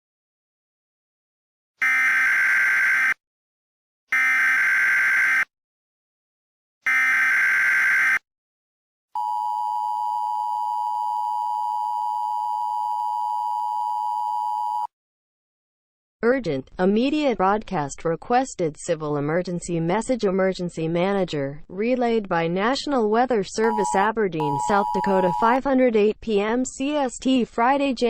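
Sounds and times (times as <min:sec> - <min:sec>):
digital data bursts: 0:23.7 - 0:25.6
two-tone attention signal: 0:23.7 - 0:25.6.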